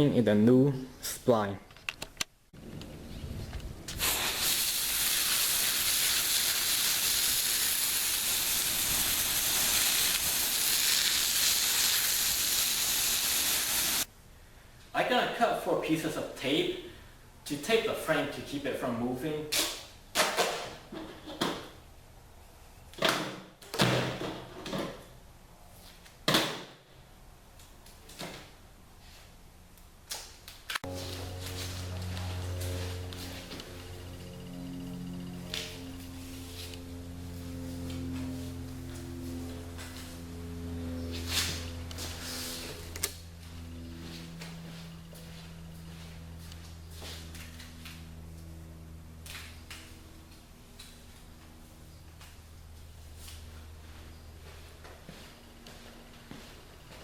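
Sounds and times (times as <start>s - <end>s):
water spraying hiss: 3.9s - 14.1s.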